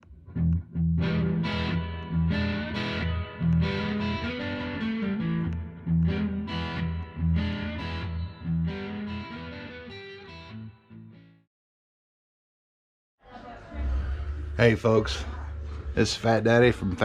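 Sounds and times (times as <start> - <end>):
distorted electric guitar chords: 0.0 - 11.4
bass line: 0.3 - 9.1.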